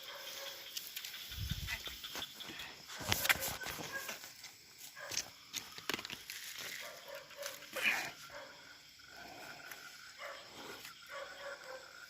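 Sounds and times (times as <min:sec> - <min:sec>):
dog barking: 0:00.0 - 0:00.6, 0:03.3 - 0:04.2, 0:05.0 - 0:05.2, 0:06.8 - 0:07.6, 0:08.3 - 0:08.6, 0:10.2 - 0:10.4, 0:11.1 - 0:11.9.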